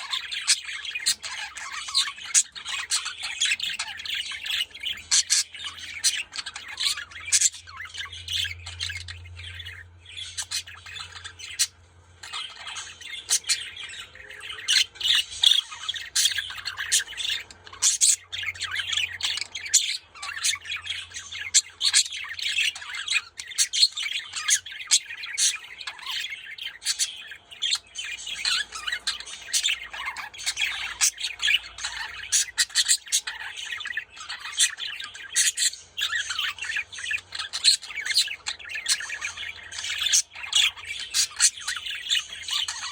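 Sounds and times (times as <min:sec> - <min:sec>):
budgerigars chattering and squawking: 0:00.0 - 0:42.9.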